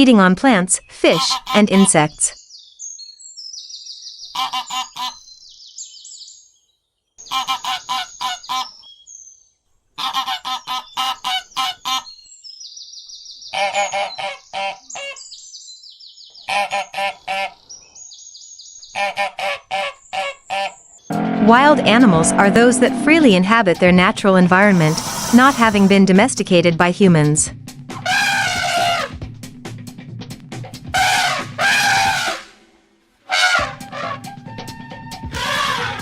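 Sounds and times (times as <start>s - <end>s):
wild ducks quacking: 1.1s - 1.8s, 4.3s - 5.2s, 7.2s - 8.7s, 10.0s - 12.1s, 16.5s - 17.6s, 19.0s - 22.0s, 31.0s - 32.5s, 33.3s - 34.2s, 35.4s - 36.0s
small birds chirping: 2.3s - 6.8s, 12.0s - 16.5s.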